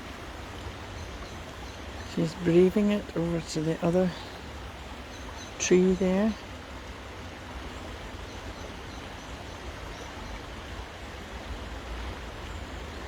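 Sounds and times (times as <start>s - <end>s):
rain: 0.0s - 13.0s
river rushing: 0.0s - 13.0s.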